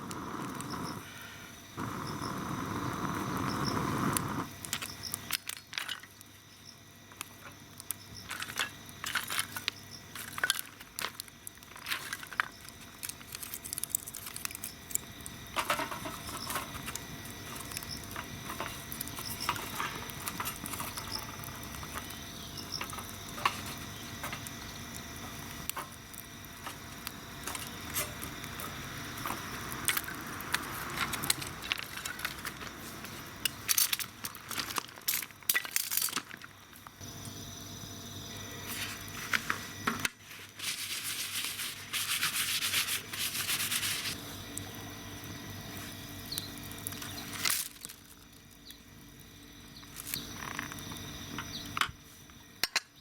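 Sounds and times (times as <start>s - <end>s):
wood fire crackling and popping: 0.0s - 1.2s, 1.8s - 37.4s, 38.6s - 52.9s.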